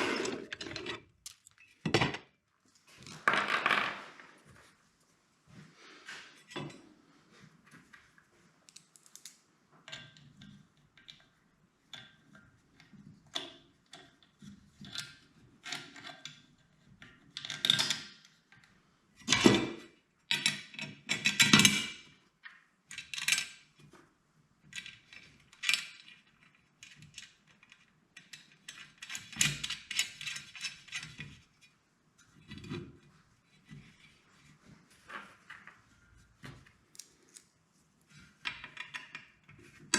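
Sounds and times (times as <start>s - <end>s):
tools and metal hardware handled: 0.0s - 2.3s, 24.7s - 32.8s.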